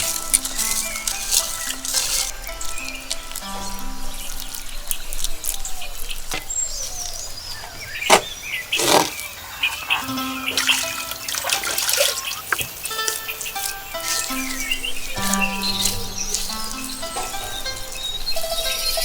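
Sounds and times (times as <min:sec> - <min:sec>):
background music: 0:00.0 - 0:05.6, 0:10.0 - 0:19.0
birds chirping: 0:00.0 - 0:19.0
sharp splash-like knocks: 0:10.5 - 0:13.1.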